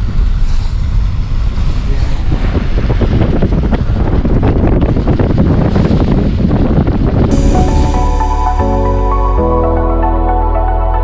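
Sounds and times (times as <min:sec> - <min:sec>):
moving vehicle noise: 0:00.0 - 0:07.2
wind buffeting microphone: 0:00.8 - 0:07.3.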